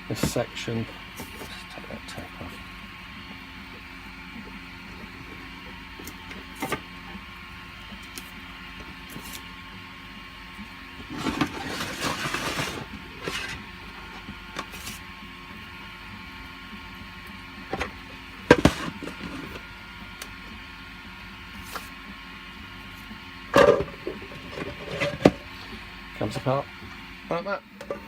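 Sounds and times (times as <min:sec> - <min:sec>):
steady machine hum: 0:00.0 - 0:28.0
plastic parts rustling scrape: 0:11.1 - 0:13.6.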